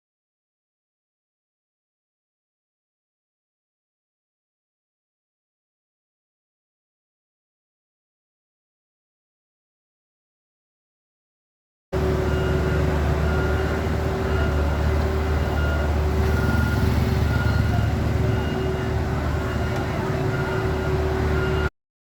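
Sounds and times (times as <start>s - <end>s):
construction machinery engine drone: 12.0s - 21.7s
high reversing beep: 12.0s - 21.7s.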